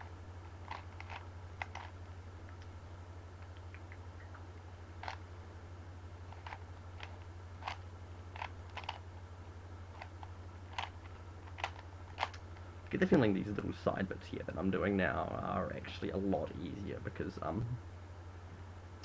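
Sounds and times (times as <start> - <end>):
steady low hum: 0.0 - 19.0
rubik's cube clicking: 0.6 - 1.9, 5.0 - 5.2, 6.3 - 7.8, 8.4 - 9.0, 10.0 - 12.4.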